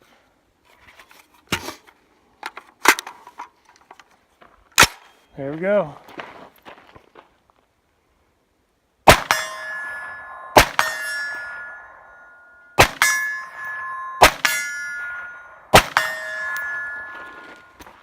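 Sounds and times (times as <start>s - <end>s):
suppressed gunshots: 9.1s - 9.7s, 10.6s - 11.0s, 12.8s - 13.2s, 15.7s - 16.6s
bullet clanging on steel target: 9.1s - 18.0s.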